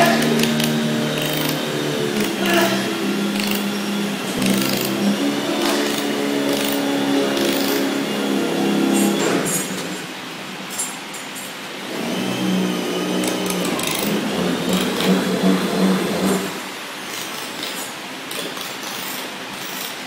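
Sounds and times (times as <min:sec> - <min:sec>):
welding machine buzzing: 0:00.0 - 0:09.9.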